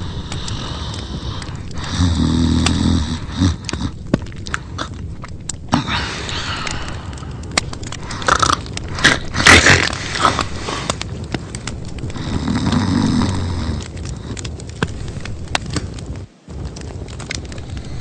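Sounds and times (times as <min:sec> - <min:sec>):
person snoring: 0:00.0 - 0:04.0, 0:12.2 - 0:13.9
wet mouth smacking: 0:00.2 - 0:10.5.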